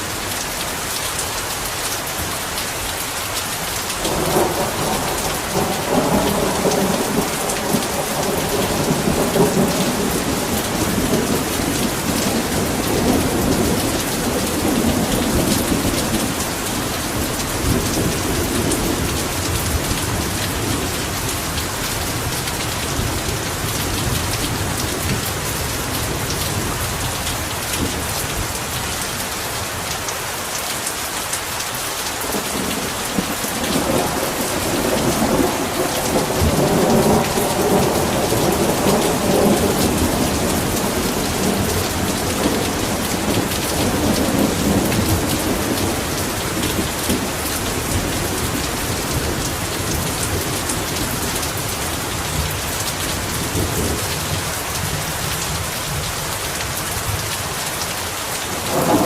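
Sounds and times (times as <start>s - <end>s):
heavy rain falling: 0.0s - 59.0s
rolling thunder rumbling: 4.0s - 22.3s, 32.2s - 55.1s, 58.5s - 59.0s.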